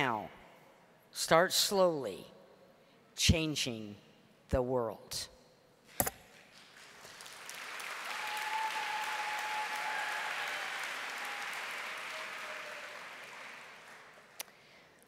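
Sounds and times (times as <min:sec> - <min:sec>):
audience applauding: 0:06.3 - 0:14.4.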